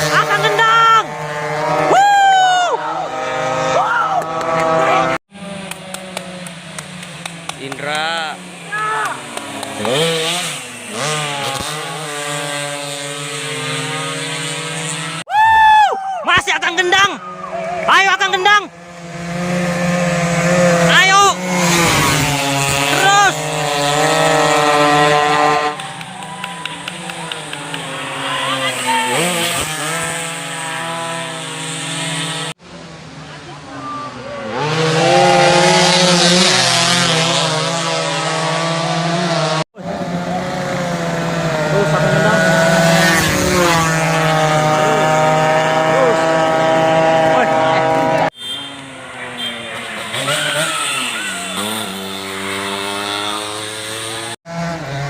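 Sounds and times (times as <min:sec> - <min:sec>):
motorcycle engine at high revs: 0:00.0 - 0:02.0, 0:02.7 - 0:15.3, 0:16.6 - 0:33.3, 0:33.9 - 0:55.0
high-pitched engine scream: 0:19.6 - 0:32.5, 0:33.7 - 0:38.8, 0:39.8 - 0:54.8.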